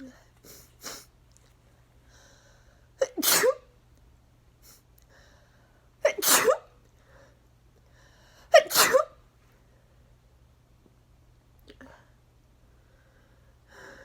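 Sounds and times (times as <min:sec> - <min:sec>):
woman sneezing: 0:03.0 - 0:03.6, 0:06.0 - 0:06.7, 0:08.5 - 0:09.2.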